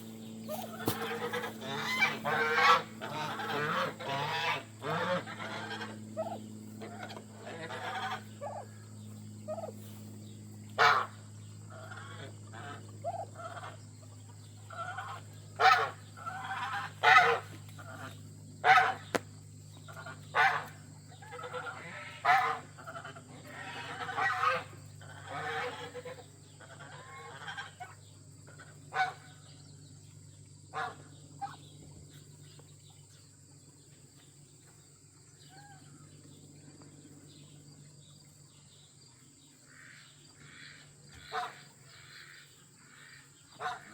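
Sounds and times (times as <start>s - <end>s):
geese honking: 0.0s - 10.0s, 10.7s - 19.2s, 19.8s - 29.5s, 30.7s - 31.6s, 39.7s - 43.9s
steady low hum: 0.0s - 43.9s.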